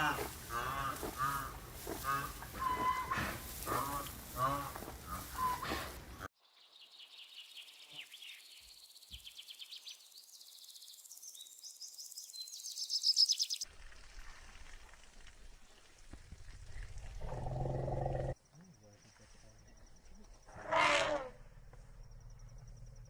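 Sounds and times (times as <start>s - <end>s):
fowl honking: 0.0s - 6.3s
small bird trilling and chirping: 6.5s - 13.6s.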